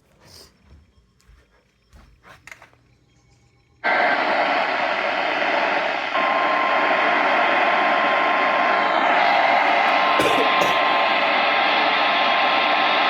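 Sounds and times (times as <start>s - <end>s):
radio static hiss: 3.8s - 13.0s.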